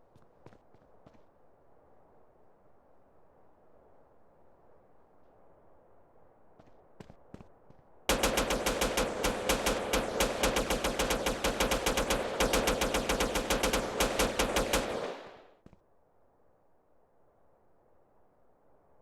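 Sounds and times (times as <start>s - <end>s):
rapid sharp bangs: 8.1s - 15.7s.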